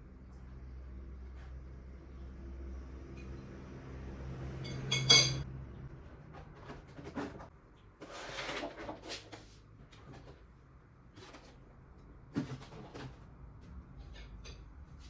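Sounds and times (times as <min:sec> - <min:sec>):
crockery clinking: 0:04.6 - 0:05.4
cutlery clicks: 0:04.7 - 0:05.4.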